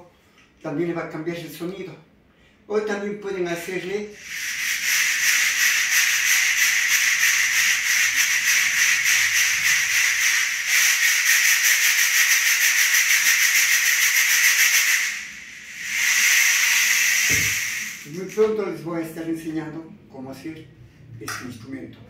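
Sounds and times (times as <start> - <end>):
rain stick rattling hiss: 3.8 - 18.6.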